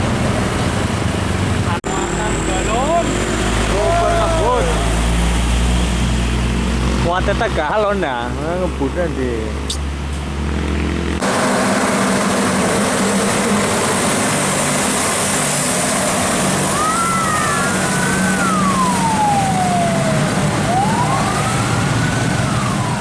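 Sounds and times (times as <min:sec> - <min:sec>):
traffic noise: 0:00.0 - 0:23.0
truck engines passing: 0:00.0 - 0:23.0
siren wailing: 0:15.4 - 0:23.0.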